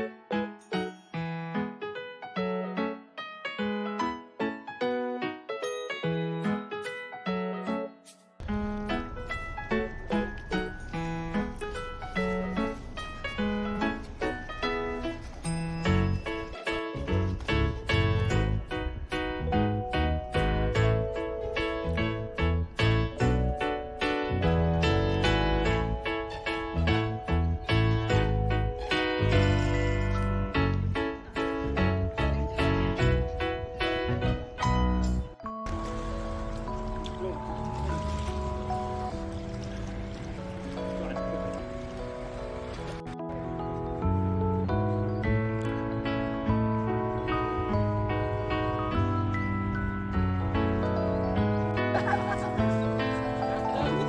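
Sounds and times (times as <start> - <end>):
bright bouncing piano melody: 0.0 - 54.0
light keyboard tune: 0.0 - 54.0.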